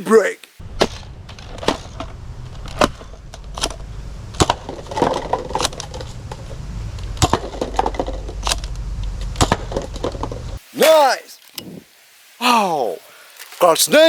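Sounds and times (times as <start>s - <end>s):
handling rustle: 13.2s - 14.0s.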